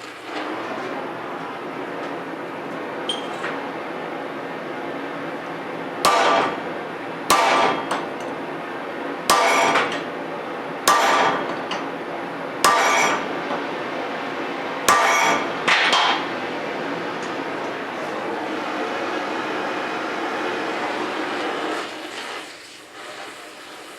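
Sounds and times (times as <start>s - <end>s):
hammer striking steel: 6.0s - 6.6s, 7.3s - 8.1s, 9.3s - 10.0s, 10.9s - 11.6s, 12.6s - 13.2s, 14.9s - 16.2s.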